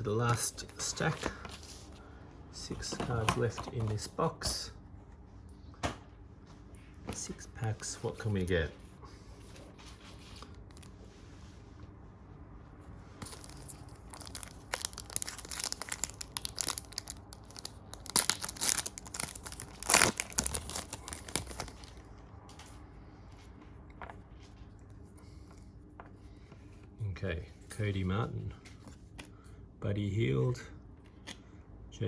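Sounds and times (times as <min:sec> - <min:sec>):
card wrappers tearing and crinkling: 0:13.2 - 0:22.0.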